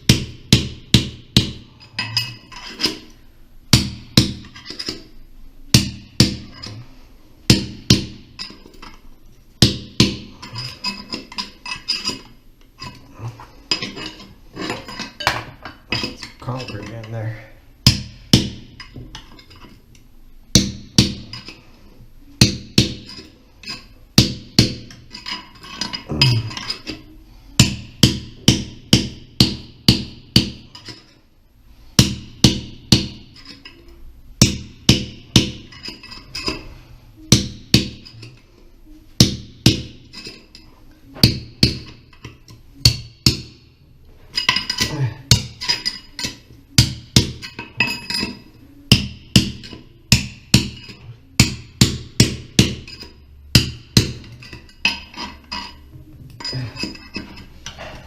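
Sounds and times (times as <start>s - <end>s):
hammer striking metal: 44.4s - 55.8s.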